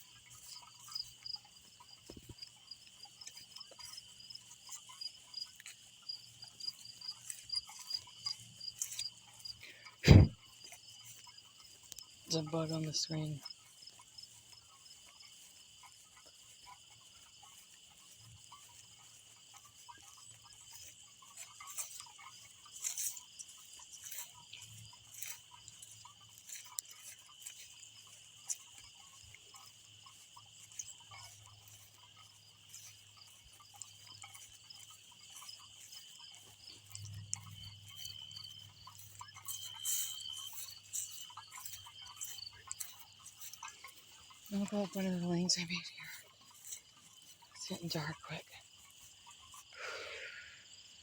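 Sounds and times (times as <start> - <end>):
insects trilling: 0.0 - 51.0
rustles and clicks: 13.4 - 45.0.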